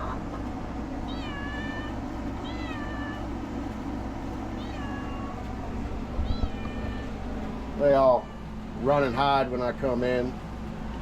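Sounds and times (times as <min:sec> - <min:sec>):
cat meowing: 0:01.0 - 0:03.3, 0:04.5 - 0:05.6, 0:06.2 - 0:07.2, 0:07.9 - 0:08.6.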